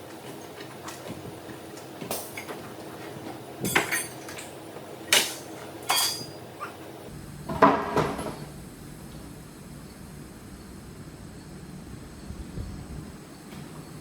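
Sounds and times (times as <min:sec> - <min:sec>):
sharp metallic clanks and knocks: 0:05.2 - 0:06.4.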